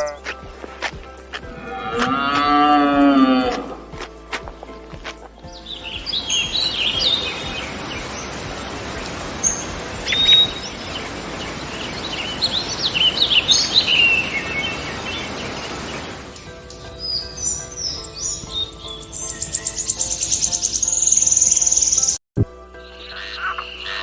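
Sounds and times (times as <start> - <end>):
birds chirping: 0.0 - 22.2, 22.8 - 24.0
steady background hiss: 5.6 - 16.8.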